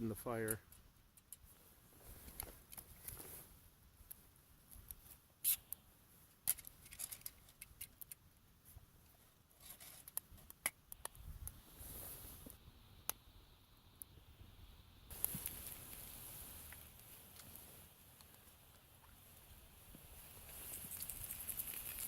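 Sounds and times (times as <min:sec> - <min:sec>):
stick fire crackling: 0:15.1 - 0:22.0.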